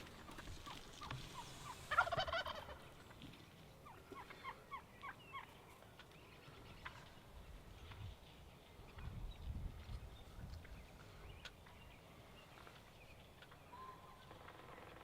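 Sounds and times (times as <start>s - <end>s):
turkey gobbling: 0.2s - 3.0s, 3.8s - 5.5s.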